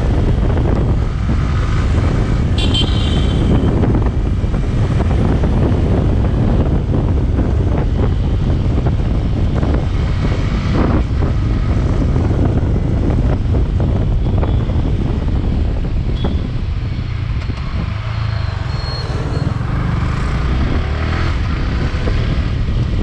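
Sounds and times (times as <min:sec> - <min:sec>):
wind buffeting microphone: 0:00.0 - 0:23.0
motorcycle engine running: 0:19.1 - 0:23.0.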